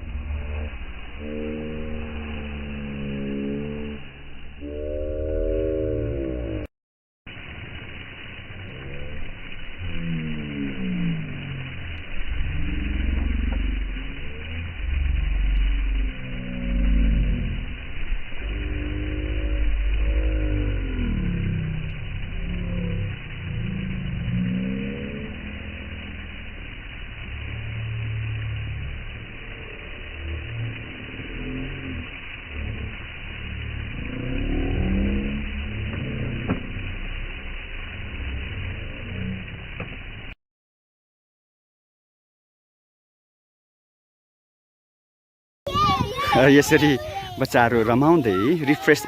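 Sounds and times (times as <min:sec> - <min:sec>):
engine revving: 0:00.0 - 0:06.7, 0:09.8 - 0:40.4.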